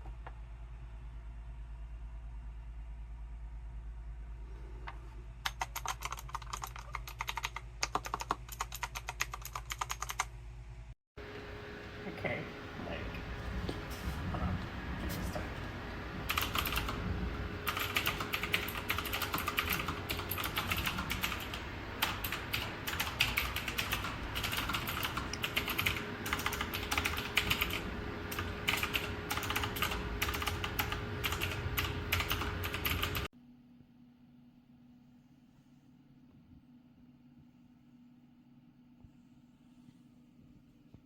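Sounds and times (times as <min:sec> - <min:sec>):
mechanical keyboard typing: 0:05.4 - 0:10.3, 0:16.3 - 0:17.0, 0:17.6 - 0:33.3.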